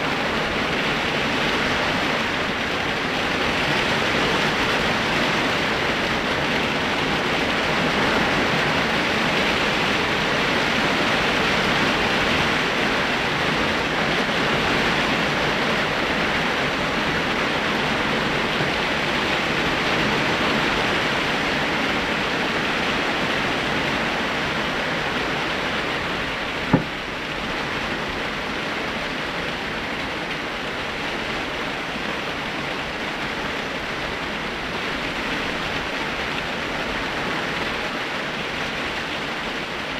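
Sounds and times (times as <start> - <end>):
heavy rain pouring: 0.0 - 39.9
sharp knock: 26.7 - 27.0.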